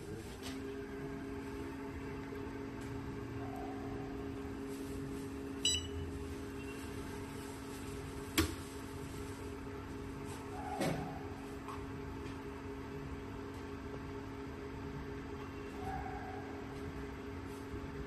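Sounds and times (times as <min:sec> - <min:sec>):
short electronic beep: 0:05.6 - 0:06.0.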